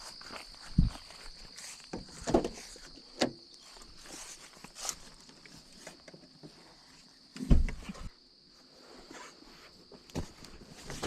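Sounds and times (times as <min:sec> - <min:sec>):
footsteps on woodland path: 0:00.0 - 0:07.2
insects droning: 0:00.0 - 0:11.0.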